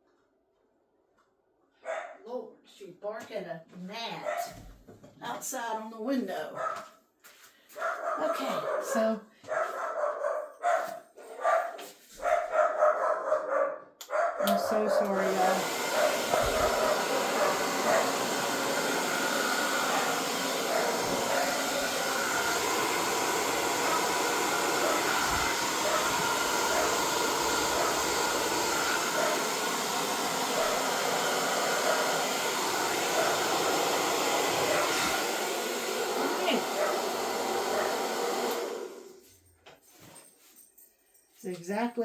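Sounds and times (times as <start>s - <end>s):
hair dryer running: 14.4s - 39.2s.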